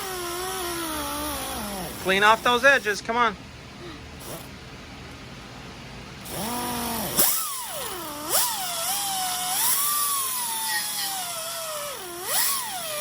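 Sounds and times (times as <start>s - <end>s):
angle grinder grinding steel: 0.0s - 3.0s, 6.3s - 13.0s.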